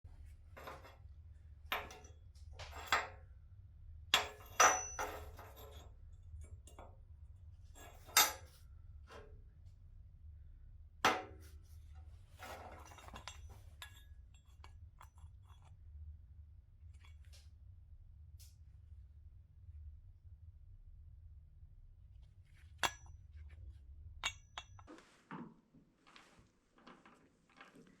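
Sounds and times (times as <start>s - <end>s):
low steady hum: 0.1s - 25.4s
metal tools clinking: 12.5s - 14.0s.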